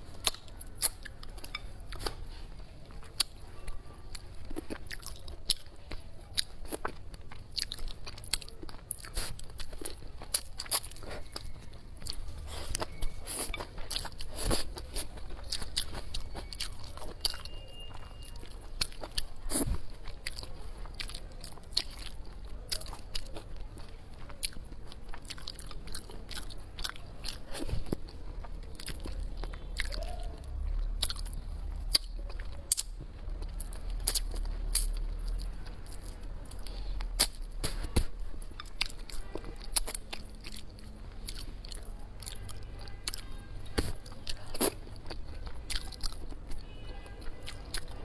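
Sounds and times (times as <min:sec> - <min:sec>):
person chewing crunchy food: 0:00.0 - 0:48.0.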